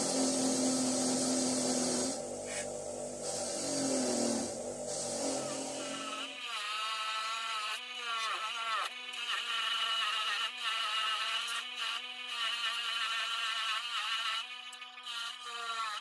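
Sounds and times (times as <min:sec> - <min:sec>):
wire wheel motor hum: 0:00.0 - 0:11.6.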